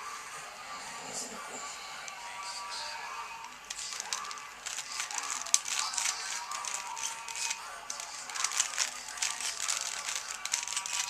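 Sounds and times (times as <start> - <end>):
puzzle cube clicking: 3.4 - 11.0.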